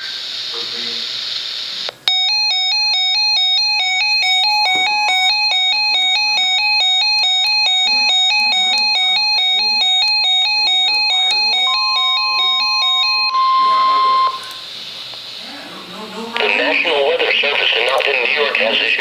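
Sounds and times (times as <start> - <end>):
electronic two-pitch alarm warble: 2.1 - 14.7.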